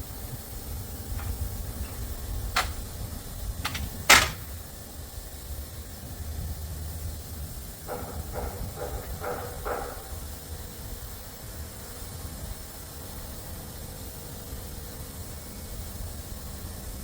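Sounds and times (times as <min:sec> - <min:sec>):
sharp knocks: 0:01.2 - 0:02.9, 0:03.6 - 0:04.5.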